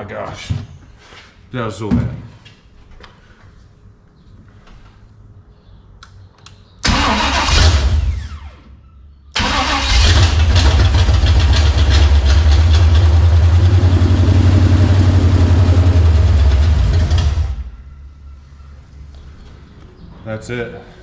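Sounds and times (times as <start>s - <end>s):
car engine running: 10.0s - 17.7s.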